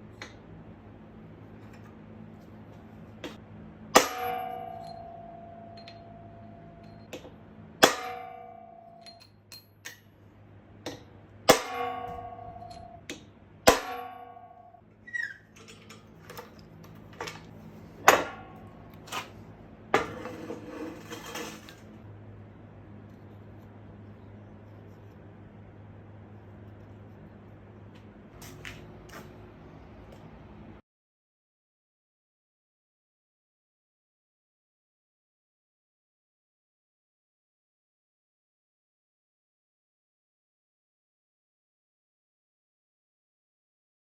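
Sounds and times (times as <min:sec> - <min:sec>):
faint steady hum: 0:00.0 - 0:30.8
metal clanging: 0:10.9 - 0:22.0.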